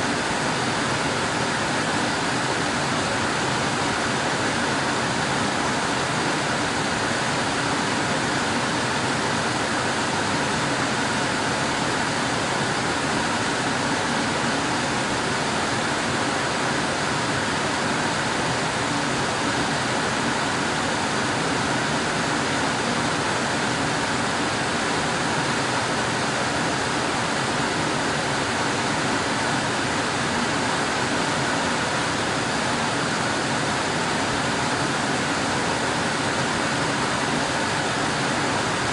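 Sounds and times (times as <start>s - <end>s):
air conditioner blowing air: 0.0s - 38.9s.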